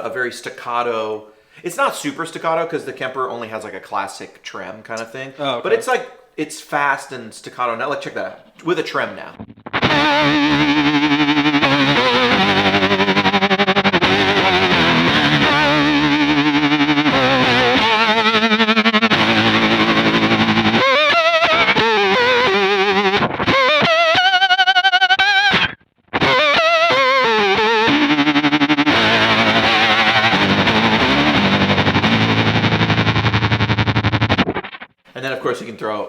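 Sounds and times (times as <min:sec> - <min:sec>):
fuzzy electric guitar with tremolo: 0:09.3 - 0:35.0.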